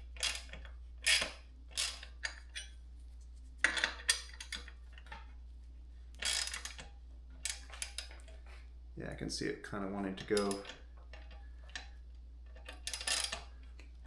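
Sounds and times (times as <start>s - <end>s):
metal clinks and scrapes: 1.1s - 2.8s.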